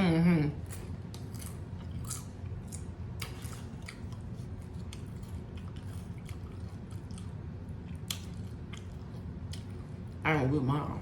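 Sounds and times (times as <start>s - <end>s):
person chewing crunchy food: 0.6s - 10.2s.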